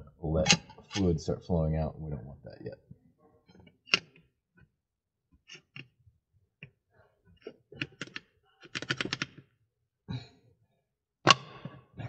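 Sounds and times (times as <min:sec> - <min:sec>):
metal parts clicking and knocking: 0:07.4 - 0:09.4.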